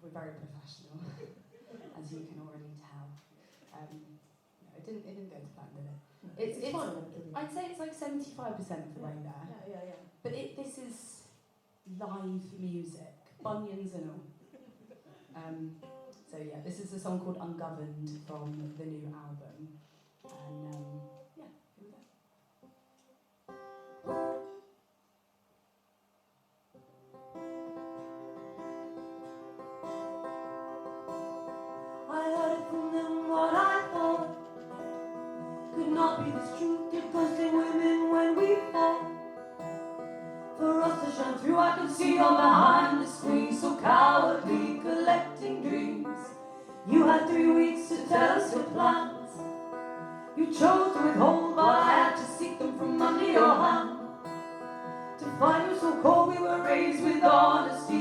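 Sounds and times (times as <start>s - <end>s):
person singing: 32.1s - 34.5s, 35.7s - 39.2s, 40.6s - 46.3s, 50.4s - 54.1s.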